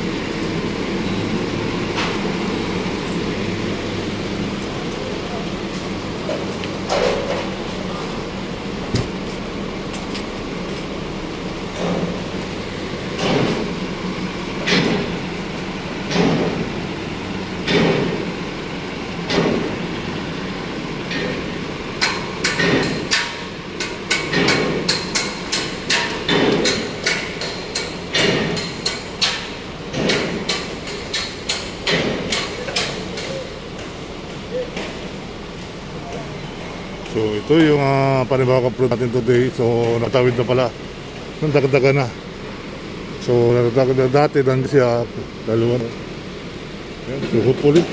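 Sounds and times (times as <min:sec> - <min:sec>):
steady background hum: 0:00.0 - 0:47.9
hammer strikes: 0:16.1 - 0:16.7, 0:17.6 - 0:18.3, 0:19.3 - 0:19.8, 0:21.1 - 0:33.9.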